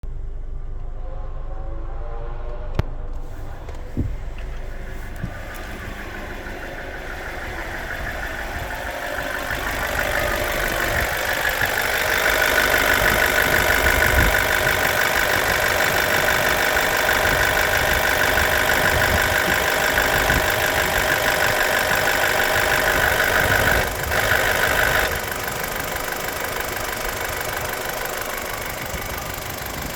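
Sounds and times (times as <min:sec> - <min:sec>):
car engine running: 0:00.0 - 0:29.9
rattling from engine: 0:00.0 - 0:29.9.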